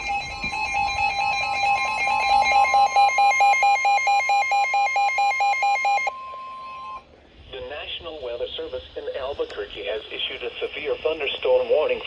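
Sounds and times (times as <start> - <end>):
electronic alert tone: 0.0 - 7.0.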